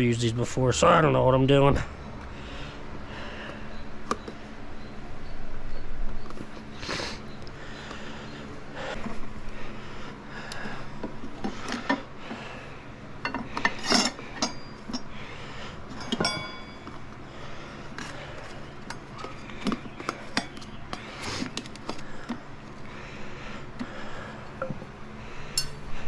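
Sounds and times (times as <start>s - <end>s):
metal tire levers clinking on rim: 13.2s - 15.2s, 15.9s - 17.1s, 18.8s - 22.0s, 25.6s - 26.0s.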